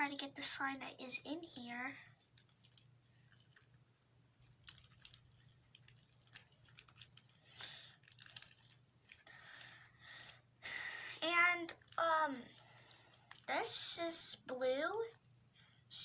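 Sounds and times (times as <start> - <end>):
slime squelching when kneaded: 0.1 - 15.1.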